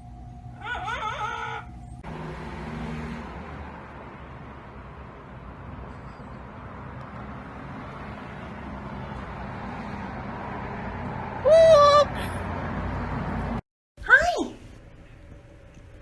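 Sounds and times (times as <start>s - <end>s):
parrot call: 0.5s - 2.0s.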